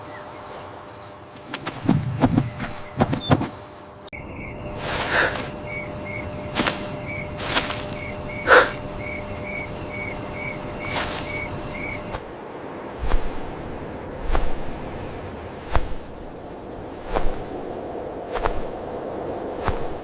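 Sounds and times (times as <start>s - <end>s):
crickets chirping: 0.9s - 12.4s.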